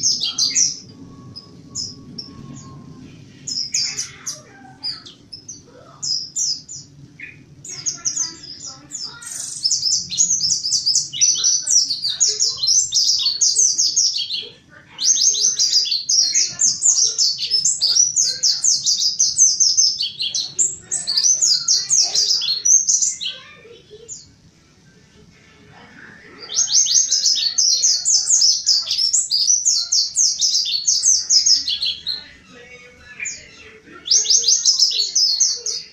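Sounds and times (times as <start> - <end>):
bird twittering song: 0.0 - 24.4, 26.4 - 35.9.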